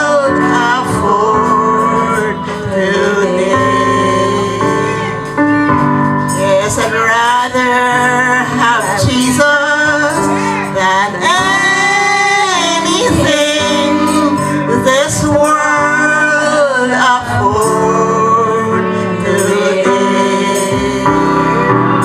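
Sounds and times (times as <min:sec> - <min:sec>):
man and woman singing together: 0:00.0 - 0:05.6, 0:06.3 - 0:22.0
instrumental accompaniment: 0:00.0 - 0:22.0.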